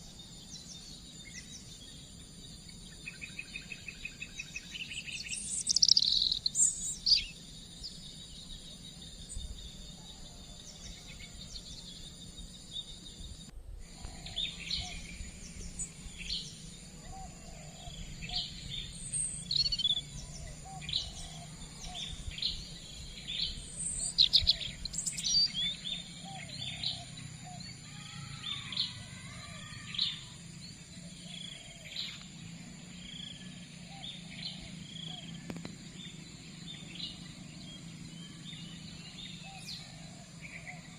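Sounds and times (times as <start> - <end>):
wild birds chirping: 0.0 - 40.9.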